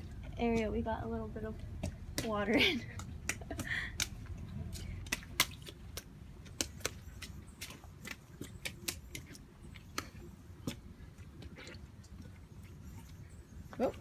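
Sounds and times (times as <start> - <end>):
rain boots splashing in puddle: 1.7 - 12.1.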